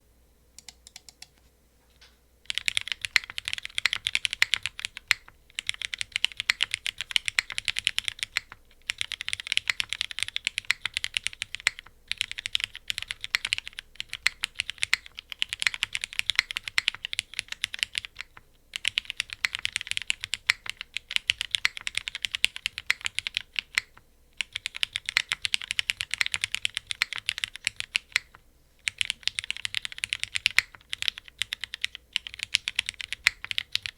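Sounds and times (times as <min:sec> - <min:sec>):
mechanical keyboard typing: 0:00.6 - 0:01.3, 0:02.5 - 0:33.9.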